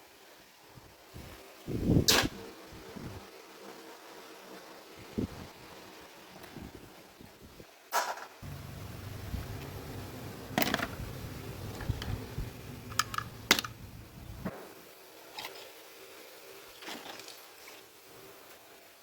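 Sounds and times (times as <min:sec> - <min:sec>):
small parts clicking and tapping: 0:08.4 - 0:14.3.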